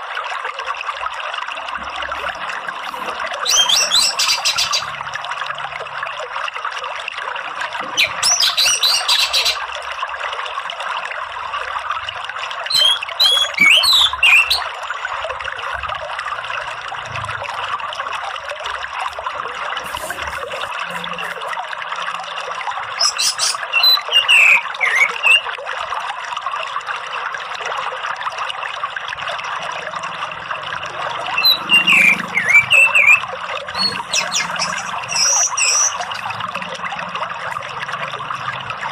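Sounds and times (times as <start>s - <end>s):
running water: 0.0s - 38.9s
thrush twittering and chirping: 2.8s - 5.0s, 8.0s - 9.6s, 12.7s - 14.8s, 23.0s - 25.4s, 31.3s - 36.6s.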